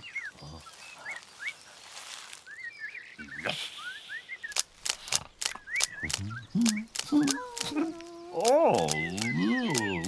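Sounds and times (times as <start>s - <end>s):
birds chirping: 0.0s - 10.0s
rapid sharp clicks: 4.5s - 7.8s, 8.4s - 10.0s.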